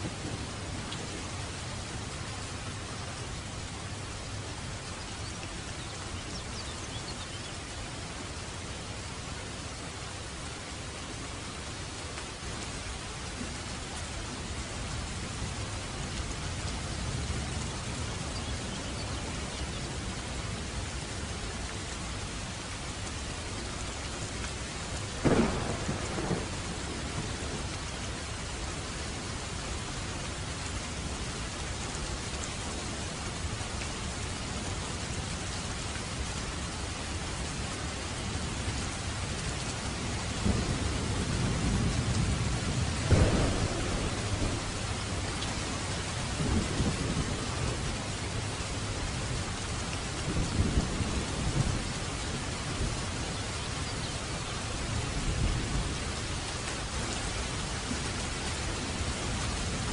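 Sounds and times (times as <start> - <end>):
rolling thunder rumble: 0.0 - 2.6, 25.2 - 28.3, 40.0 - 53.0
heavy rain falling: 0.0 - 59.9
thunder crack: 25.2 - 26.8, 43.1 - 44.8.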